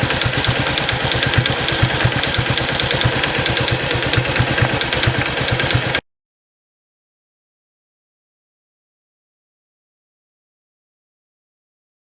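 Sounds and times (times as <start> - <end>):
engine idling: 0.0 - 6.0.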